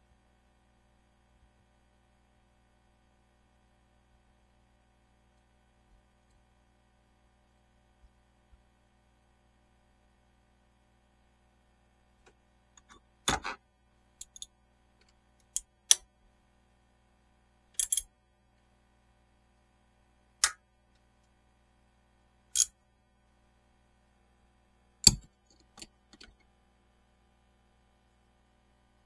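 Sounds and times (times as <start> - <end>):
tools clicking and knocking: 12.8 - 13.6, 14.2 - 14.5, 17.8 - 18.1, 25.1 - 26.4.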